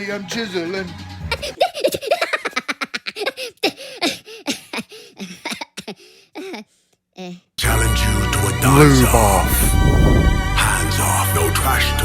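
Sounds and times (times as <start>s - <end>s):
person laughing: 8.7s - 9.5s.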